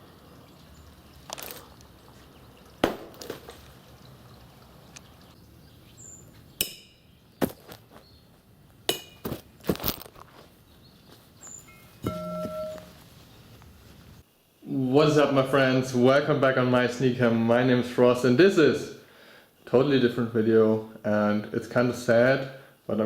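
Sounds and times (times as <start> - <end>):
low steady background noise: 0.0 - 23.0
short pitched tone: 11.7 - 13.0
sharp ringing knocks and clicks: 12.0 - 12.9.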